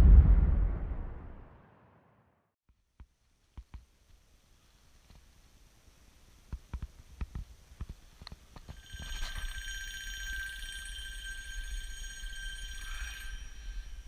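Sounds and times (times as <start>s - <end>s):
alarm clock ringing: 8.7s - 14.0s.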